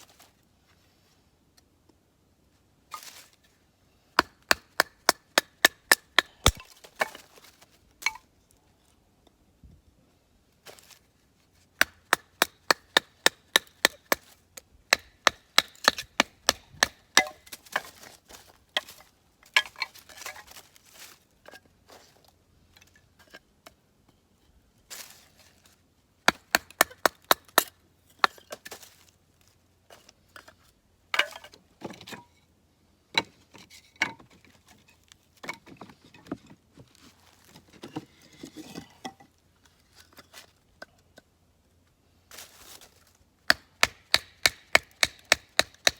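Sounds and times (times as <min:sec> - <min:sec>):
blade chopping wood: 0:04.2 - 0:07.3, 0:11.8 - 0:18.2, 0:26.2 - 0:28.9, 0:43.5 - 0:45.9.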